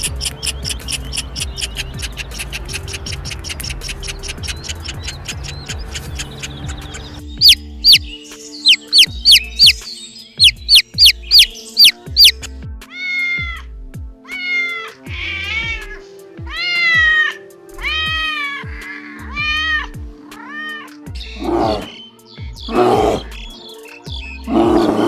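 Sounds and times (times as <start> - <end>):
background music with beat: 0.0 - 25.0
high falling chirps: 6.9 - 12.4
cat meowing: 12.9 - 13.6, 14.3 - 20.9.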